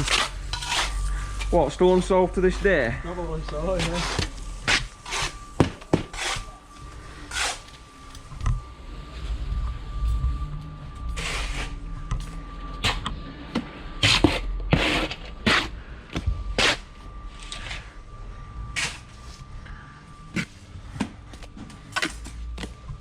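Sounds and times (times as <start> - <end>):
faint steady tone: 15.8 - 23.0.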